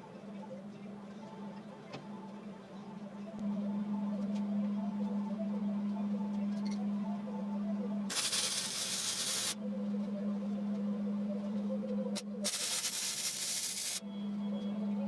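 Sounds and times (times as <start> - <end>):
spray paint can spraying: 8.1 - 9.6, 12.4 - 14.0.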